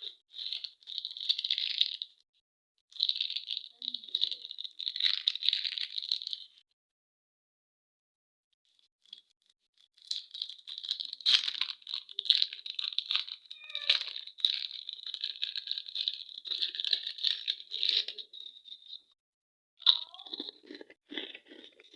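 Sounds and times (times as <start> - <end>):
plastic wrapper crinkling and tearing: 0.0 - 2.1, 2.9 - 6.6, 9.8 - 19.0.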